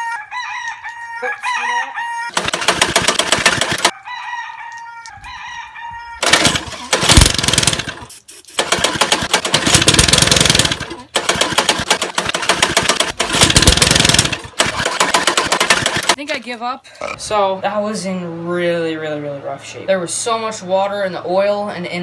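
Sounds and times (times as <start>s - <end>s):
rooster crowing: 0.0s - 2.4s, 3.8s - 6.6s
lawn mower engine sputtering: 2.3s - 3.9s, 6.2s - 16.2s.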